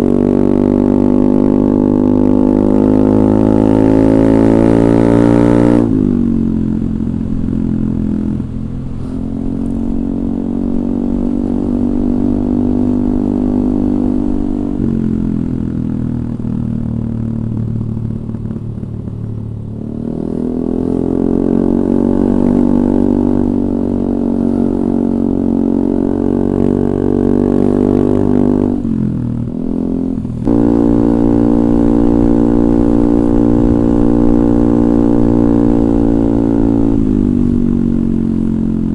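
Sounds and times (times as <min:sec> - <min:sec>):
scooter engine droning exhaust: 0:00.0 - 0:38.9.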